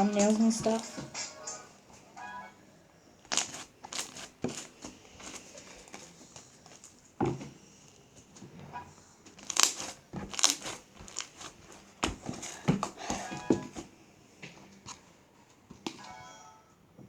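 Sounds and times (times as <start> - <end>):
slime squished by hand: 3.3 - 7.0, 9.4 - 13.9.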